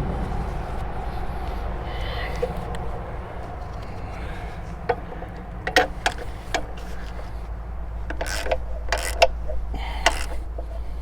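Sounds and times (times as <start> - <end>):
metal clicks: 0.1 - 11.0
ratchet wrench clicking: 4.9 - 11.0.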